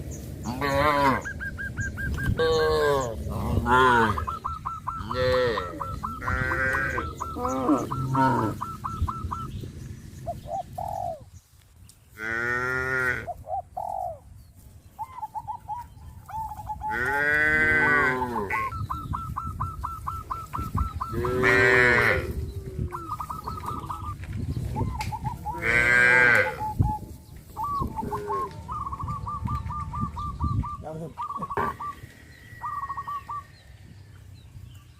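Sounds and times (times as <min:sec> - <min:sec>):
bird chirping rapidly: 0:00.0 - 0:03.1, 0:04.2 - 0:11.2, 0:18.6 - 0:21.4, 0:26.6 - 0:34.9
cattle mooing: 0:00.5 - 0:01.3, 0:02.4 - 0:04.2, 0:05.0 - 0:08.6, 0:16.9 - 0:18.7, 0:21.1 - 0:22.8, 0:25.5 - 0:26.6.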